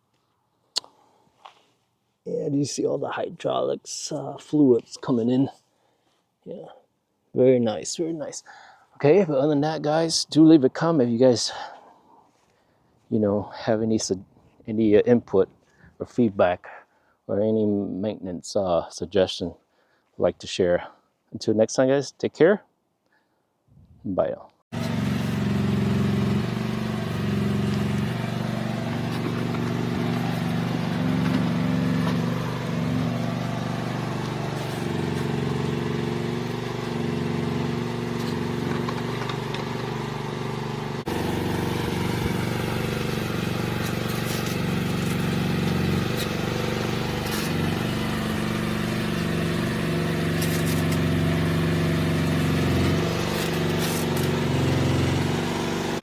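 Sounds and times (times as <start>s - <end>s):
small excavator engine running: 24.8s - 56.0s.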